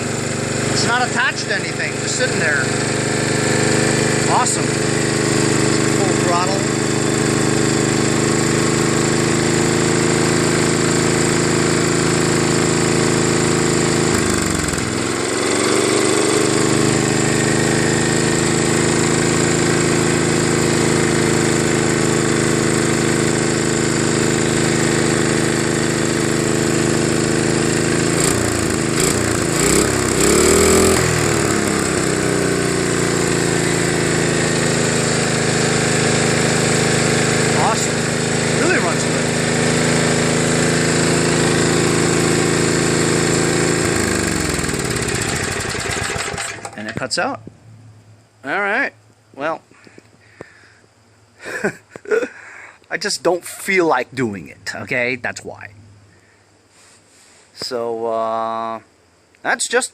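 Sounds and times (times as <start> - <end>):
snowblower engine running: 0.0 - 47.2, 51.4 - 55.2
engine clicks: 45.3 - 47.6.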